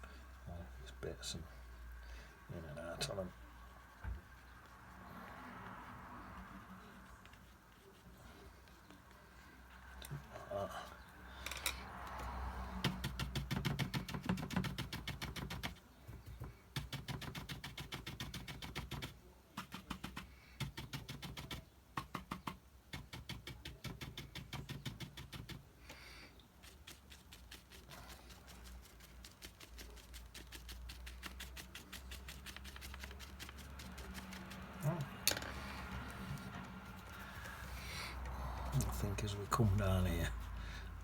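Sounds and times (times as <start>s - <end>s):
paintbrush tapping on paper: 12.8s - 25.6s.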